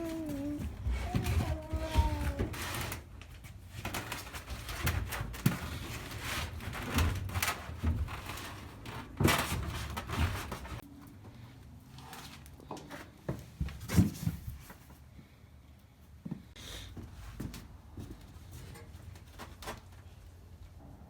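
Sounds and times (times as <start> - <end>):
knocks bumps and scraping: 0.0 - 10.8.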